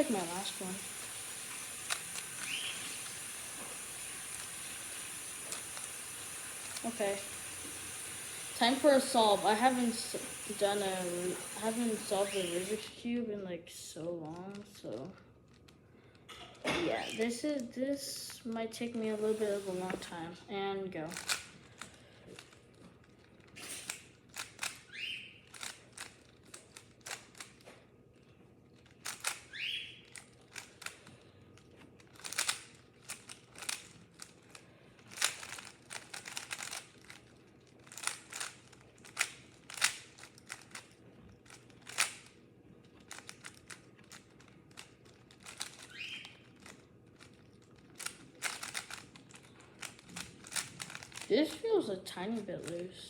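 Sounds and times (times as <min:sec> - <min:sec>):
puzzle cube layers clicking: 0:00.0 - 0:08.8, 0:32.2 - 0:34.3, 0:35.1 - 0:37.2, 0:37.9 - 0:40.9, 0:41.5 - 0:42.3, 0:43.0 - 0:51.4.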